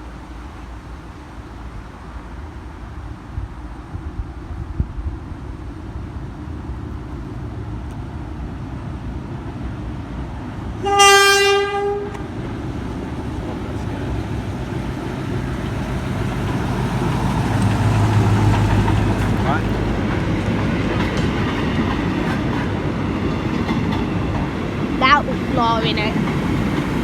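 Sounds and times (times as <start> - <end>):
train rumble: 0.0 - 27.0
train horn blast: 10.8 - 12.3.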